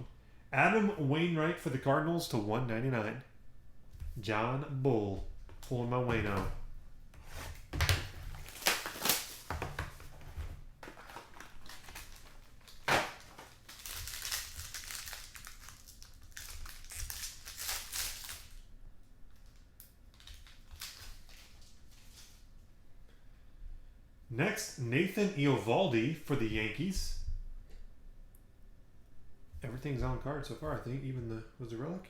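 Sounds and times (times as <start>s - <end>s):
packaging crinkling and tearing: 7.3s - 18.7s, 19.3s - 22.4s.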